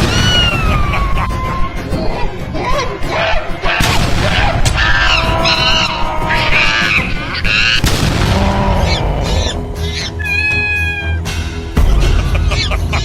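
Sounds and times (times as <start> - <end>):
wavering voice-like cries: 0.0 - 3.8, 4.4 - 7.8, 8.4 - 11.4
cartoon background music: 0.0 - 13.0
booming hits: 7.8 - 9.5.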